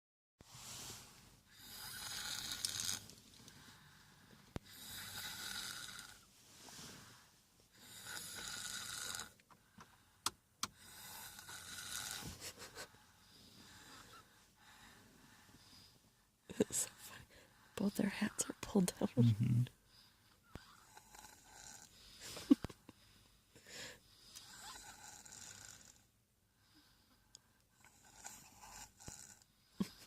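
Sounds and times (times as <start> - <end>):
person snoring: 1.5 - 3.1, 4.6 - 7.1, 7.8 - 9.4, 10.8 - 14.9, 20.6 - 22.7, 23.7 - 26.0, 27.8 - 30.0.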